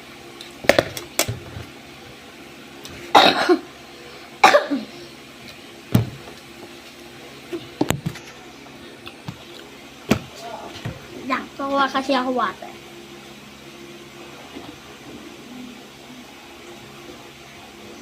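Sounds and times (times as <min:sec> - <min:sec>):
person coughing: 0:03.1 - 0:03.7, 0:04.4 - 0:05.0.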